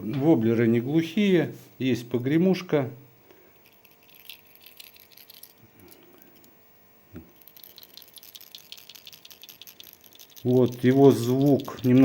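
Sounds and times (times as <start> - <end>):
fishing lure rattle clicking: 3.6 - 6.6, 7.4 - 12.0.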